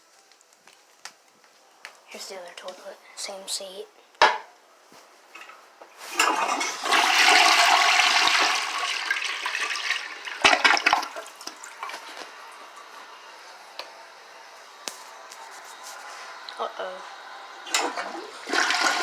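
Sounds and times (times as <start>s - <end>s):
toilet flushing: 5.3s - 13.4s, 15.2s - 19.0s
water running: 5.3s - 19.0s.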